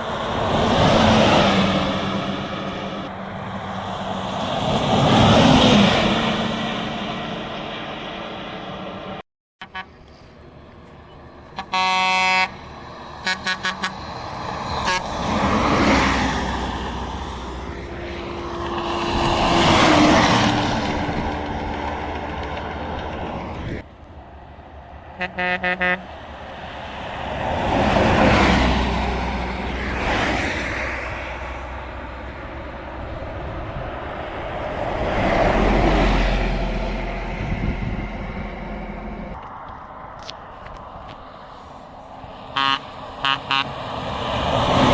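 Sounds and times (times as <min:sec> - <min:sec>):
buses passing at speed: 0:00.0 - 0:44.9
bus horn honking: 0:09.6 - 0:10.0, 0:11.5 - 0:12.6, 0:13.2 - 0:14.2, 0:14.8 - 0:15.2, 0:25.1 - 0:26.1, 0:42.5 - 0:43.8.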